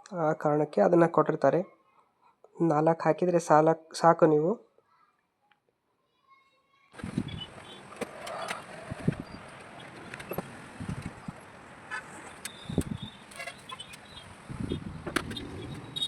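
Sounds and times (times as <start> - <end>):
steady background hiss: 7.0 - 16.0.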